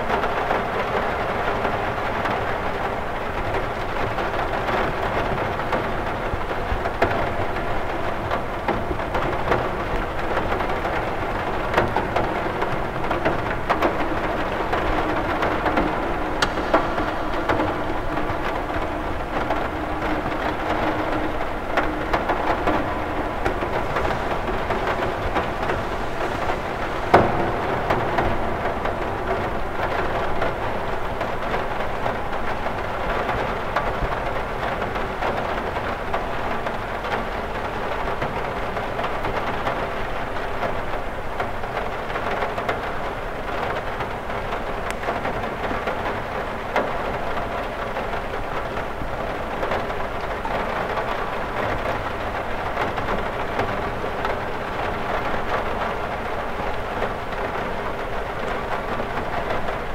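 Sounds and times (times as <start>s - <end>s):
rain pattering on a window: 0.0s - 59.9s
sharp drop tap: 16.4s - 17.6s.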